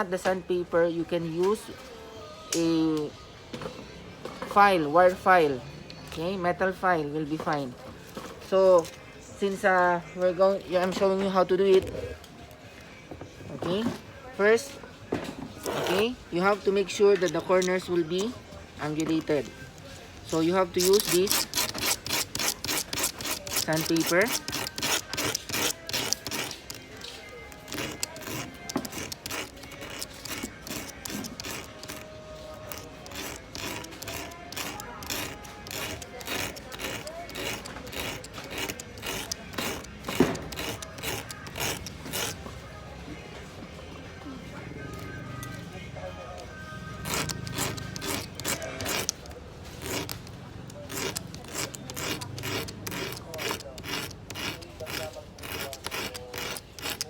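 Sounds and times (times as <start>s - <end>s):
sandpaper rubbing on wire: 20.2s - 42.6s, 47.0s - 57.0s.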